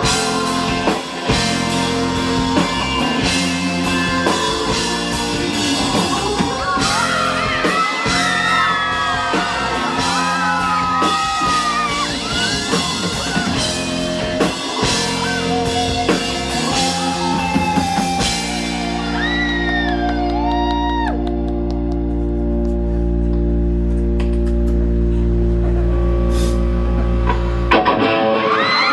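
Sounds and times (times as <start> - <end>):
crowd singing and yelling: 0.0 - 19.2
live rock band playing: 0.0 - 28.9.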